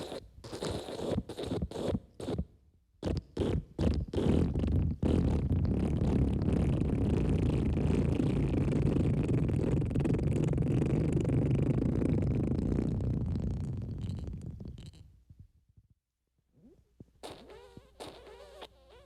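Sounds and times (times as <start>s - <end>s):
wet fart sounds: 0.0s - 2.4s, 3.0s - 15.1s, 16.6s - 19.0s.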